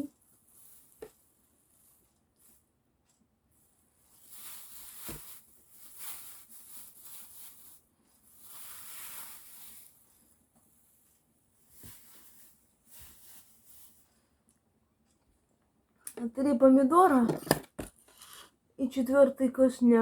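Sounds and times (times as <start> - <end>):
tomatoes rustling on table: 4.0 - 10.3, 11.5 - 14.4.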